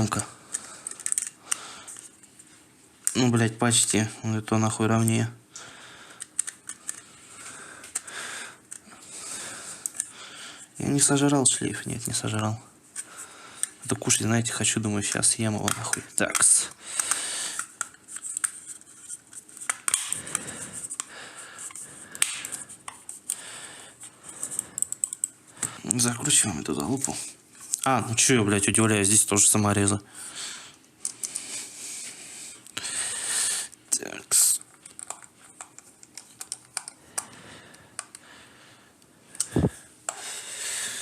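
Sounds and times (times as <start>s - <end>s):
small screwdriver clicks and taps: 34.8s - 37.3s.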